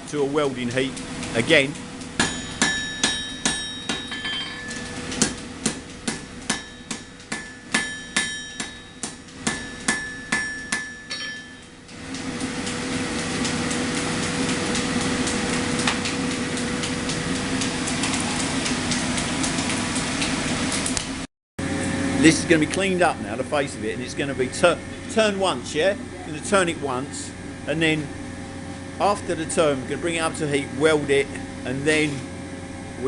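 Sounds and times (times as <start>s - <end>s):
hammer striking steel on anvil: 2.2s - 11.7s.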